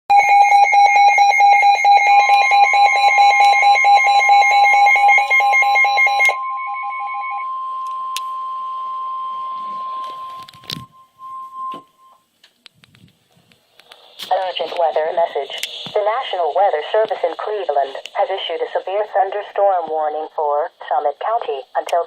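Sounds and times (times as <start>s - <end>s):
rapid beeping alarm: 0.1s - 12.3s
steady alarm tone: 0.1s - 12.3s.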